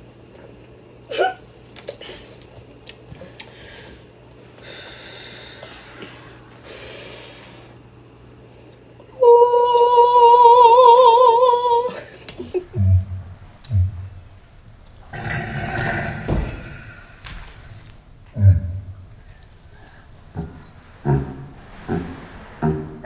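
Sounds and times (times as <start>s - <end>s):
person's long wavering voiced tone: 9.1s - 12.8s.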